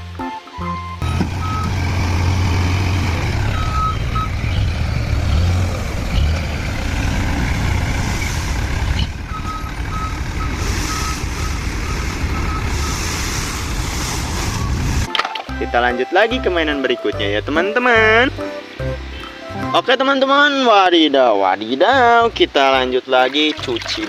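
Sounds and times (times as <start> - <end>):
truck reversing alarm beeping: 0.2 - 6.8, 7.4 - 15.1
low engine rumble: 1.0 - 15.1
running water: 23.0 - 24.0.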